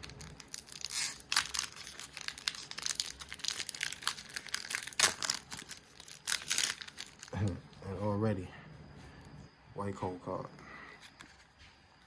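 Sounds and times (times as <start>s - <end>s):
foil wrapper tearing and crinkling: 0.0s - 7.5s.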